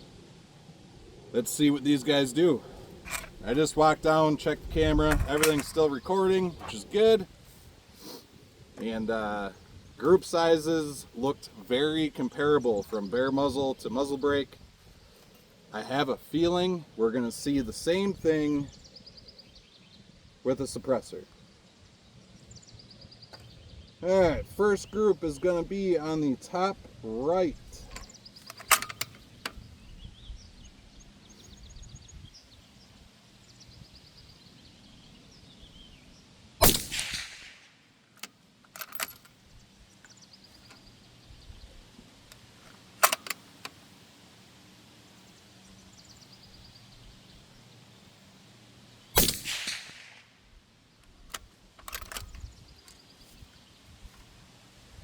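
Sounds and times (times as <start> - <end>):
suppressed rifle shots: 36.6 - 37.8, 49.2 - 50.4
small clicks: 42.3 - 43.8.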